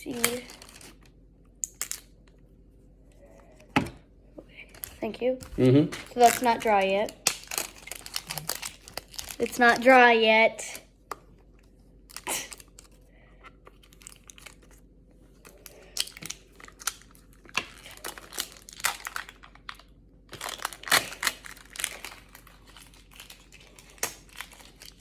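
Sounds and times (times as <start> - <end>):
plastic packaging crinkling: 0.0 - 1.1, 4.6 - 10.0, 13.7 - 25.0.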